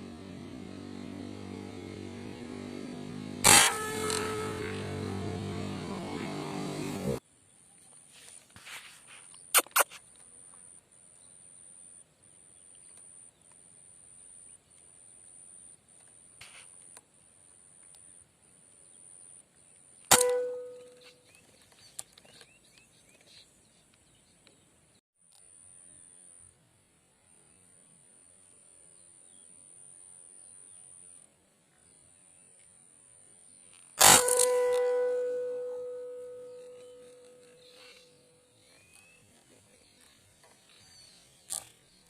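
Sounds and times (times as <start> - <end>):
metallic ring: 2.1 - 6.2, 20.1 - 21.1, 34.0 - 38.4
loud gunshot: 3.3 - 5.0, 20.1 - 20.8, 34.0 - 37.0
sharp clicks: 9.5 - 10.0.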